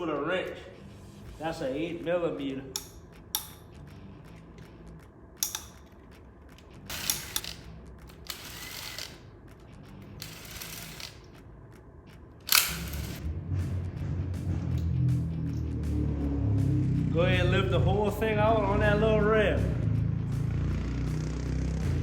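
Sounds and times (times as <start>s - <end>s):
metal clinks: 2.8s - 3.8s, 5.4s - 6.0s
ratchet wrench clicking: 2.8s - 3.8s, 5.4s - 5.9s, 6.8s - 9.3s, 10.1s - 11.4s, 12.5s - 13.2s.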